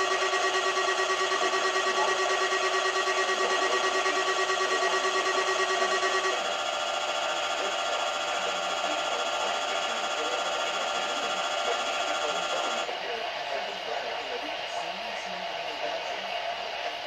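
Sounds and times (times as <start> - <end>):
pulsing alarm tone: 0.0 - 12.9
radio hiss: 0.0 - 17.0.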